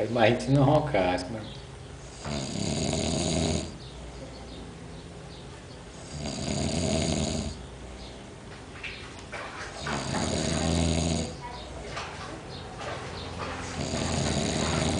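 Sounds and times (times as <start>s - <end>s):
man snoring: 2.1s - 3.8s, 6.0s - 7.6s, 9.8s - 11.4s, 13.8s - 14.9s.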